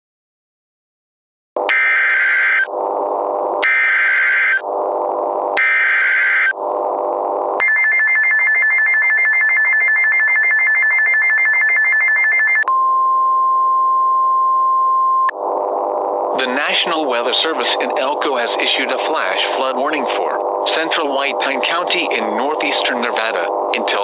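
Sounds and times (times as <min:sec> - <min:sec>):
steady single alarm tone: 0:01.7 - 0:02.7, 0:03.6 - 0:04.6, 0:05.6 - 0:06.5, 0:07.6 - 0:15.3
warbling data tones: 0:03.6 - 0:06.7, 0:15.3 - 0:24.0.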